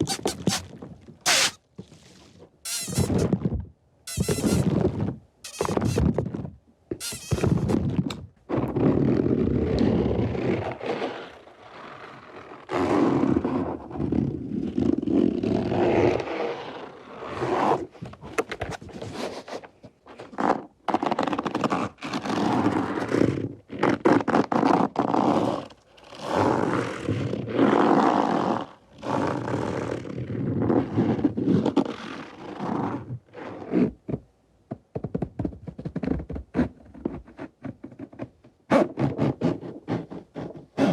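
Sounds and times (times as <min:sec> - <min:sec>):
scraping and rubbing at microphone: 0:00.0 - 0:00.7, 0:01.3 - 0:01.6, 0:02.7 - 0:03.3, 0:04.1 - 0:04.8, 0:05.5 - 0:06.2, 0:07.0 - 0:07.9.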